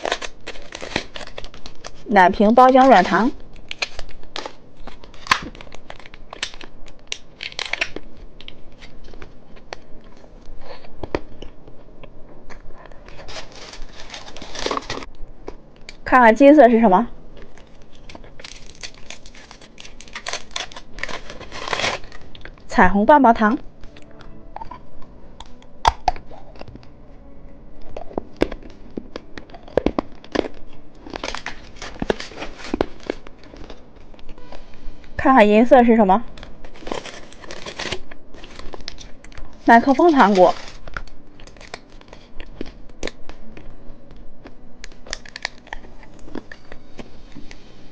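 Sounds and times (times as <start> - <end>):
plastic packaging crinkling: 0.0 - 11.6, 12.9 - 15.1, 17.4 - 22.7, 27.9 - 34.4, 36.3 - 43.3, 44.8 - 47.6.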